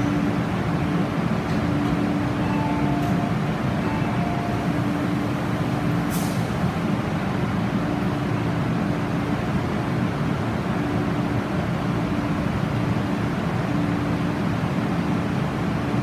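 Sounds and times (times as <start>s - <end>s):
station rumble: 0.0s - 7.7s
electric train hum: 0.0s - 16.0s.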